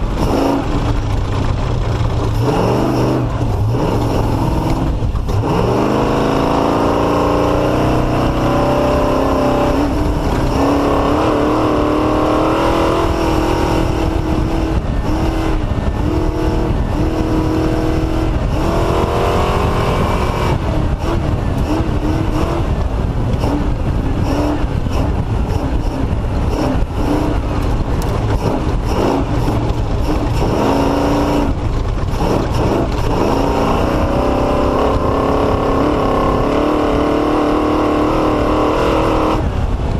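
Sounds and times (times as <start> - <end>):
vehicle knocks and rattles: 0.0 - 5.6, 20.8 - 33.8
engine revving: 0.0 - 39.9.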